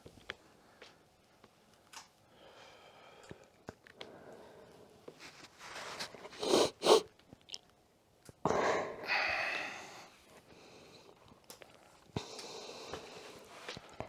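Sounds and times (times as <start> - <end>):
person breathing forcefully: 6.4 - 7.0.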